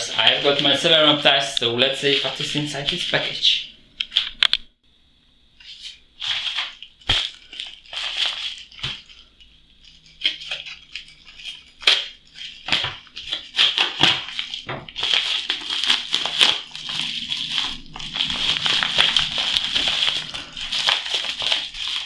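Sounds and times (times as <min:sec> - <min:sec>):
packaging crinkling and snapping: 0:03.9 - 0:04.7, 0:06.3 - 0:22.0.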